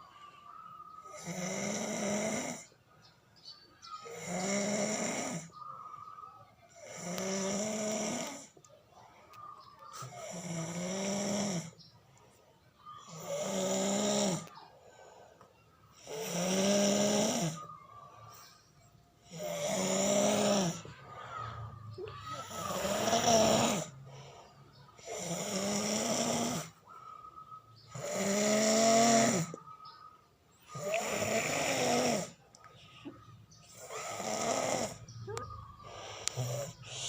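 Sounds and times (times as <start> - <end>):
man snoring: 1.0 - 2.7, 4.0 - 5.5, 6.8 - 8.6, 10.0 - 11.8, 13.1 - 14.5, 16.0 - 17.6, 19.2 - 20.8, 22.4 - 24.0, 25.0 - 26.8, 27.9 - 29.6, 30.7 - 32.4, 33.7 - 37.0.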